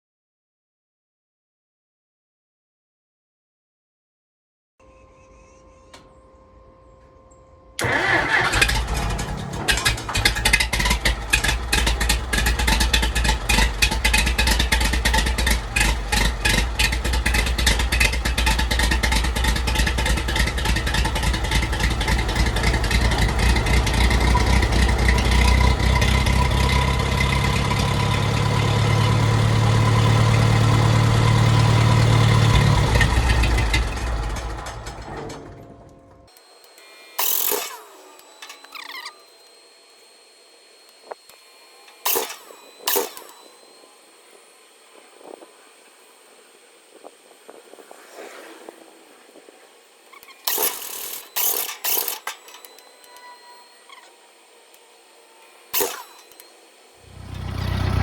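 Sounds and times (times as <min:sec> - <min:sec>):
tractor engine running: 0:07.8 - 0:39.4, 0:40.9 - 0:43.5, 0:50.0 - 0:53.2, 0:57.0 - 0:58.0.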